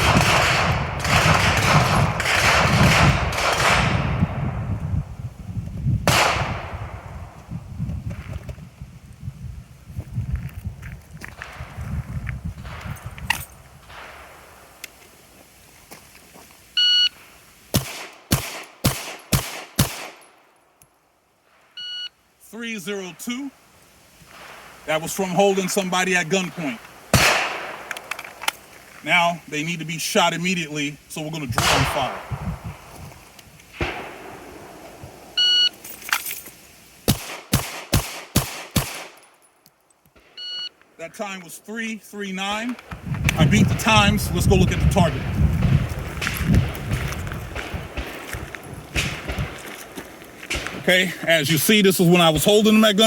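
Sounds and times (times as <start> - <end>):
pistol shots: 0.0 - 4.3, 6.1 - 6.8, 17.7 - 20.3, 27.1 - 28.1, 31.6 - 32.4, 33.8 - 34.8, 37.1 - 39.2, 44.8 - 49.7
shot timer beep: 21.8 - 22.1, 35.4 - 35.7, 40.4 - 40.7.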